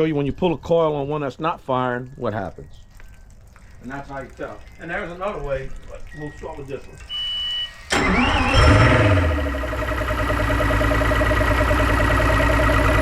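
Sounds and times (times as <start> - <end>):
short beep: 6.1 - 9.1
outboard engine starting and idling: 7.0 - 13.0.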